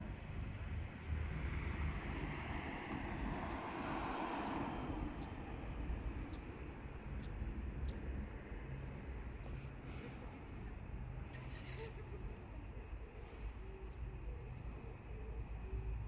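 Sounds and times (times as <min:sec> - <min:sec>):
passing vehicle: 0:00.0 - 0:09.3.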